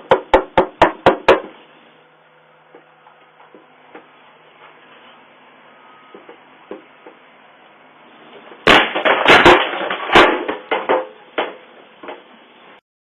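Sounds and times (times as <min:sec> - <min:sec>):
loud bangs and clattering knocks: 0:00.0 - 0:01.5, 0:08.6 - 0:12.2.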